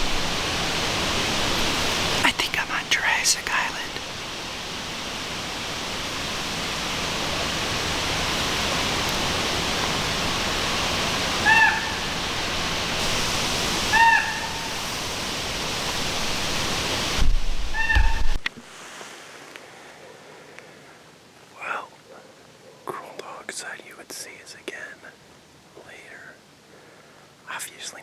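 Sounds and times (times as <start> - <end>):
wind rushing through woods: 0.0 - 28.0
bird calls: 11.2 - 12.4, 13.8 - 14.9, 17.7 - 18.4.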